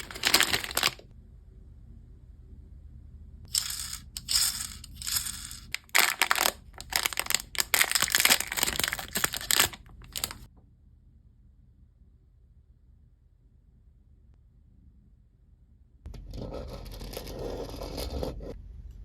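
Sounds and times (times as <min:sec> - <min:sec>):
packaging crinkling and tearing: 0:00.0 - 0:01.0, 0:03.5 - 0:10.5.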